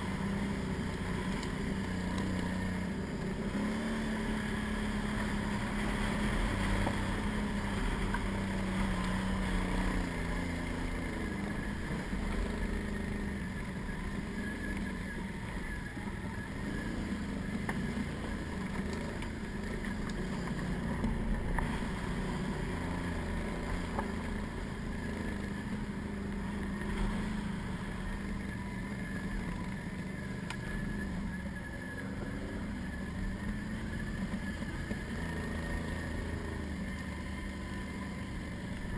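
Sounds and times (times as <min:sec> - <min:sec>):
atv engine revving: 0:00.0 - 0:38.9.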